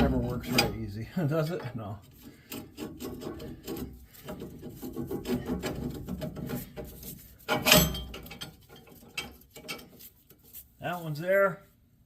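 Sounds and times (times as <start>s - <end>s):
metal clank: 0.0s - 1.0s, 7.5s - 9.9s
metal scraping and clicking: 0.0s - 1.0s, 1.6s - 10.6s.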